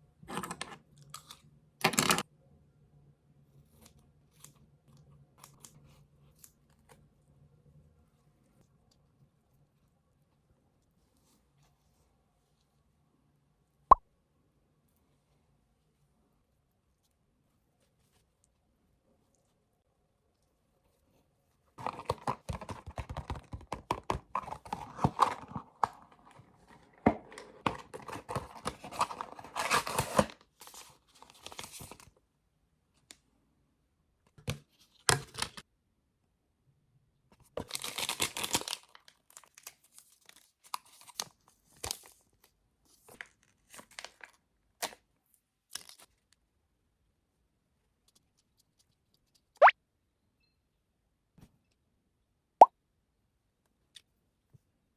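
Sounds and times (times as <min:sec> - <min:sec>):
packaging crinkling and tearing: 0:21.8 - 0:32.1, 0:37.6 - 0:42.2, 0:43.1 - 0:45.0.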